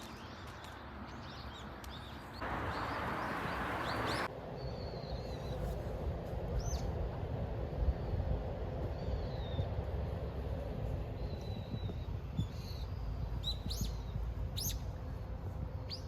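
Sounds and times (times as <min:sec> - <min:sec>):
small birds chirping: 0:00.0 - 0:05.7, 0:11.1 - 0:14.9
low wind rumble: 0:02.4 - 0:16.0.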